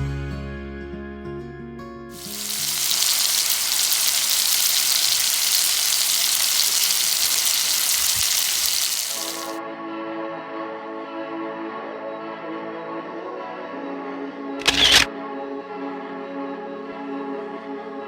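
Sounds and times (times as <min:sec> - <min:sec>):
music: 0:00.0 - 0:02.2, 0:09.6 - 0:18.0
food sizzling in hot pan: 0:02.1 - 0:09.6, 0:14.6 - 0:15.1.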